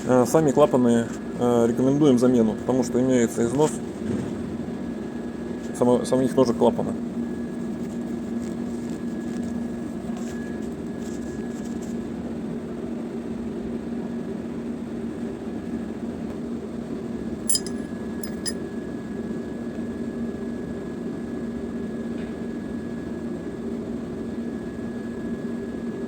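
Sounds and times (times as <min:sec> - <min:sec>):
metallic clinks: 0:17.5 - 0:18.6.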